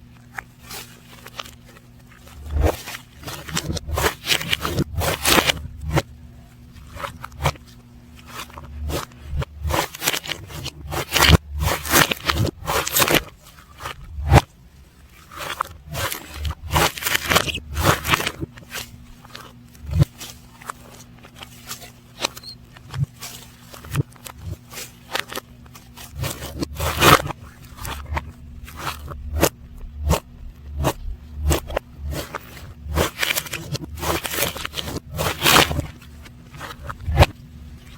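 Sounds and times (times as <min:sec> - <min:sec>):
faint steady hum: 0:00.0 - 0:37.9
slime squishing played backwards: 0:26.1 - 0:37.4.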